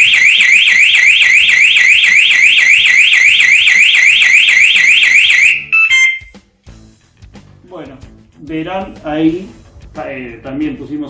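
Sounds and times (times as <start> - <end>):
motorcycle alarm siren warbling: 0.0 - 6.4.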